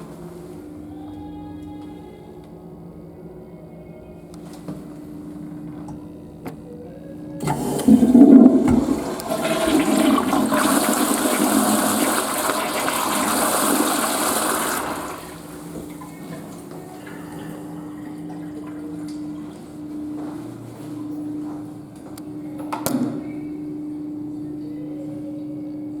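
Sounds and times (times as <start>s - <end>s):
toilet flushing: 7.4s - 19.7s.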